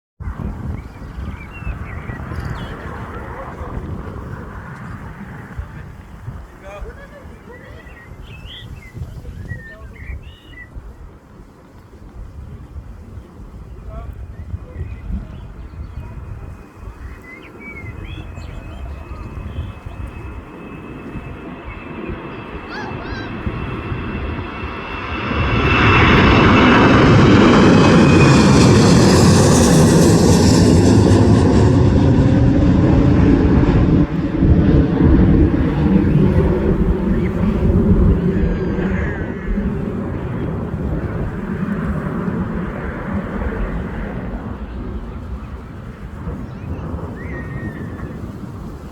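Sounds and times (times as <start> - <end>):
jet engines rumbling: 0.2 - 48.9
small birds chirping: 0.8 - 3.4, 7.4 - 10.7.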